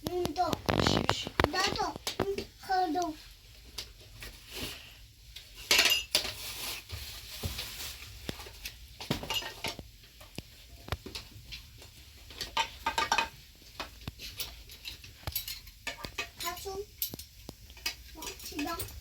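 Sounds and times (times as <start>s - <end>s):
dishes and utensils clinking: 5.6s - 6.5s, 9.0s - 9.9s, 12.3s - 19.0s.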